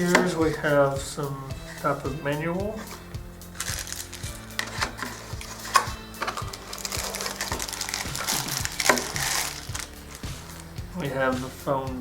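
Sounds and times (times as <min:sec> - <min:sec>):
soft background music with beat: 0:00.0 - 0:12.0
packaging rustling and crinkling: 0:02.8 - 0:10.8.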